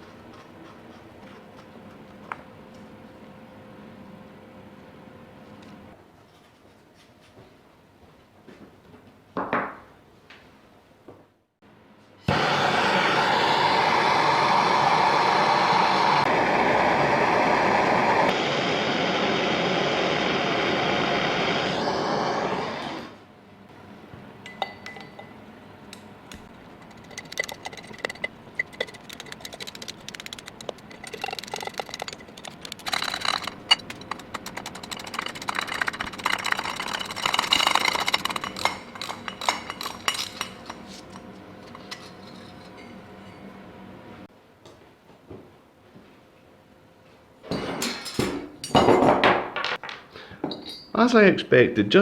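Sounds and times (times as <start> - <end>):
loud steady noise: 12.3 - 23.1
hand tools clinking on metal: 30.5 - 43.4.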